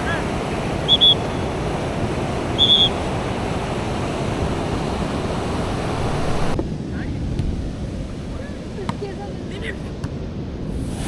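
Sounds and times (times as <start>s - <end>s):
sea surf breaking on beach: 0.0s - 7.0s.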